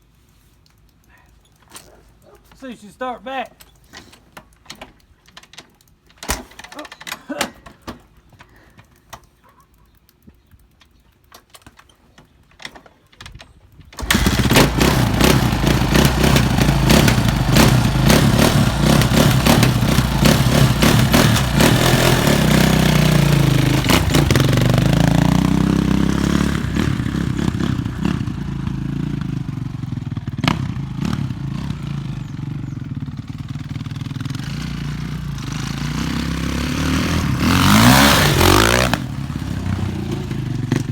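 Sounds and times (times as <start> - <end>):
quiet clicks: 0.0 - 25.1
motorcycle engine starting and idling: 13.8 - 40.9.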